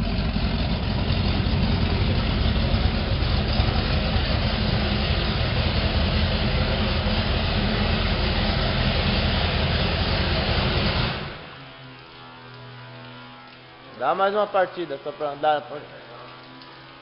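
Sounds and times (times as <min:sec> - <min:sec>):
boat engines idling: 0:00.0 - 0:11.8.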